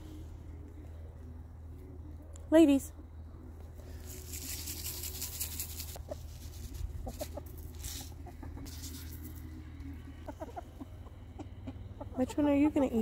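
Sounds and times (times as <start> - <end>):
hens clucking: 4.7 - 13.0.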